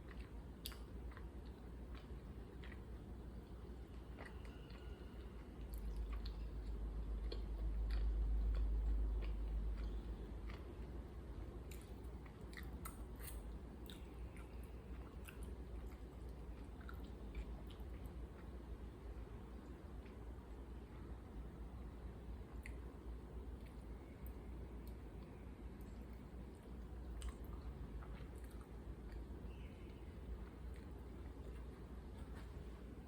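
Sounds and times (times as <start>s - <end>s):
person chewing: 0.0s - 11.0s, 11.6s - 18.6s, 24.8s - 32.8s.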